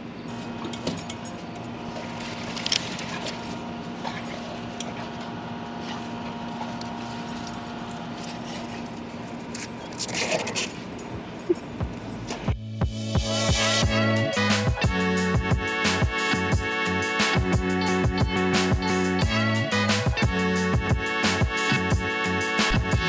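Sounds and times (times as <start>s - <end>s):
steady mechanical hum: 0.0s - 12.6s, 13.6s - 23.0s.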